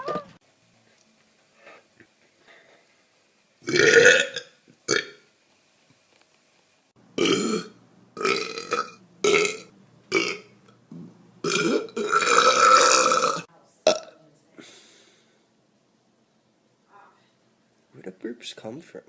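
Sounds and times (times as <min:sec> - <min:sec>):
person belching: 0:03.7 - 0:05.2, 0:07.2 - 0:10.5, 0:11.4 - 0:14.2.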